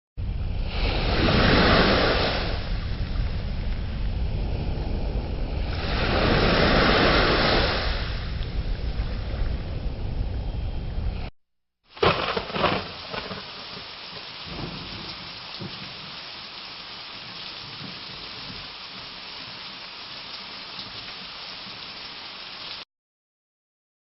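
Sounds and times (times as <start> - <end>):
thunderclap rumbling: 0.2 - 11.3, 12.0 - 16.2
heavy rain falling: 11.9 - 22.8.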